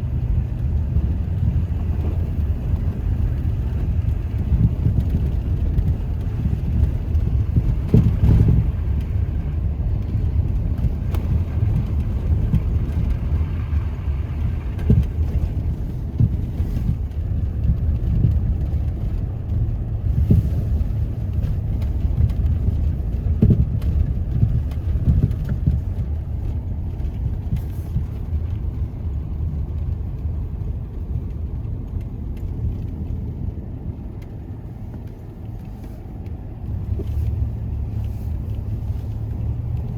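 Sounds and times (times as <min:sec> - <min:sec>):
car engine and road rumble: 0:00.0 - 0:39.9
car bumps: 0:01.0 - 0:09.2, 0:10.0 - 0:19.2, 0:20.0 - 0:28.2.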